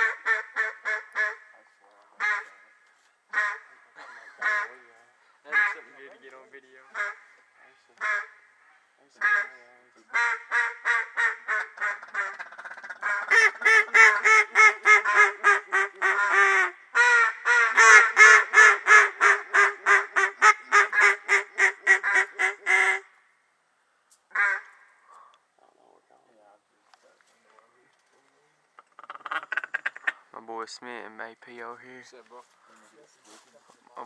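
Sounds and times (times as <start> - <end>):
duck call quacks: 0.0 - 1.6, 2.2 - 2.7, 3.3 - 4.8, 5.5 - 5.9, 6.9 - 7.4, 8.0 - 8.5, 9.2 - 23.1, 24.3 - 25.2, 28.9 - 30.2.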